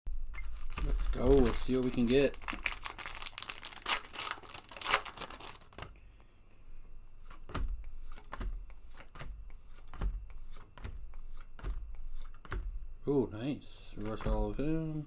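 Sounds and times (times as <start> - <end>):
cards rustling and knocking: 0.4 - 5.9, 7.2 - 12.8, 13.9 - 15.0
wrapper crinkling and tearing: 0.5 - 5.9.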